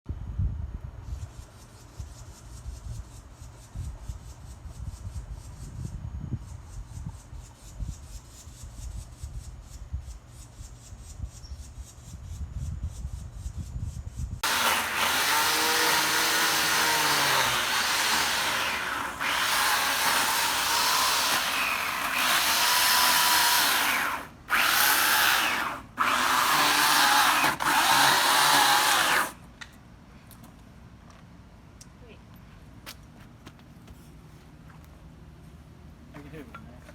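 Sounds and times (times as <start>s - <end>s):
power tool spinning: 14.4s - 29.4s.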